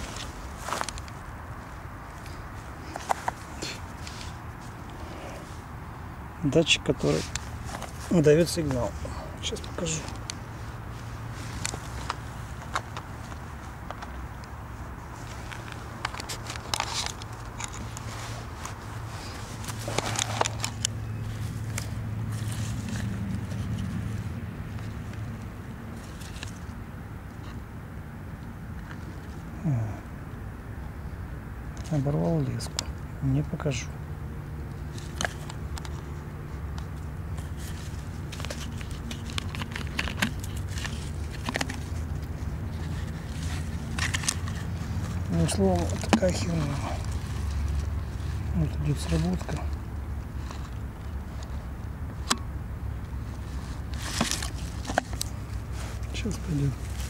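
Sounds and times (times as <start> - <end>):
clicks and rustling from handling: 15.2 - 24.1, 34.8 - 52.4, 53.0 - 57.0.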